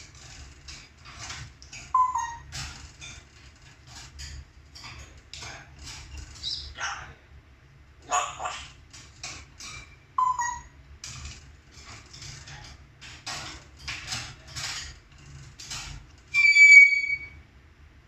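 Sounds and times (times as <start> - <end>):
bird whistling: 2.0 - 2.4, 10.2 - 10.7, 16.3 - 17.4
bird harsh rasping calls: 2.0 - 2.5, 8.0 - 8.8, 10.2 - 10.7, 16.4 - 17.4.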